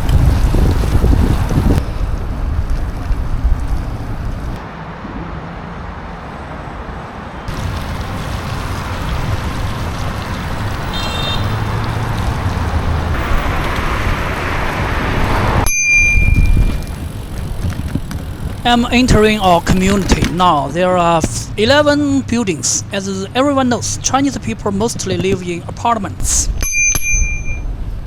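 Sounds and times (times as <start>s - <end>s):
motor traffic: 0.0s - 28.0s
road and wind noise: 0.0s - 28.0s.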